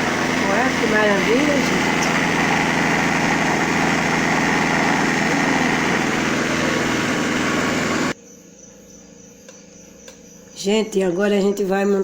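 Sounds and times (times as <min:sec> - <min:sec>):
electric blender motor: 0:00.0 - 0:08.2.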